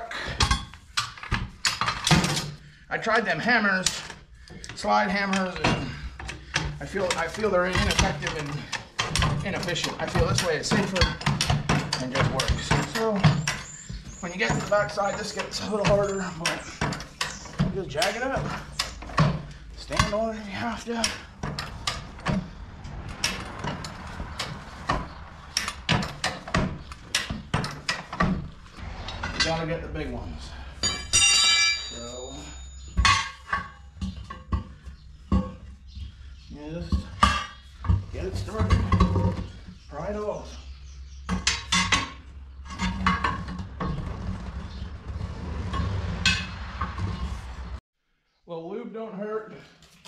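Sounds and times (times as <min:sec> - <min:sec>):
metal clanks and knocks: 0:03.9 - 0:36.1, 0:36.9 - 0:39.8, 0:41.2 - 0:47.6
steady low hum: 0:28.4 - 0:32.8.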